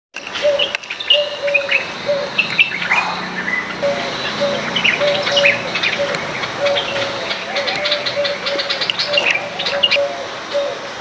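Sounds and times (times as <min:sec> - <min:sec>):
birds chirping and twittering: 0:00.2 - 0:11.0
low clipped bird notes: 0:00.4 - 0:10.1.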